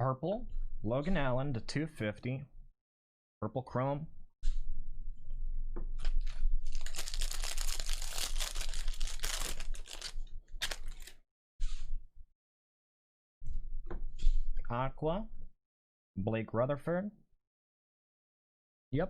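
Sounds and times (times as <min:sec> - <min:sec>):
packaging crinkling and rustling: 0:06.0 - 0:11.2.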